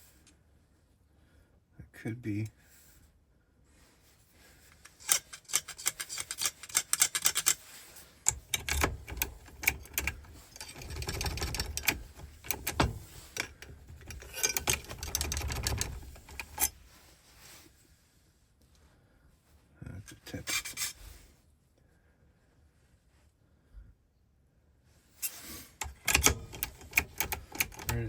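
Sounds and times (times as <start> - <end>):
key clicking in lock cylinder: 4.9 - 7.6, 8.2 - 16.7, 25.8 - 28.0
key rubbing and scraping: 4.9 - 16.8, 20.2 - 21.0, 25.2 - 28.0.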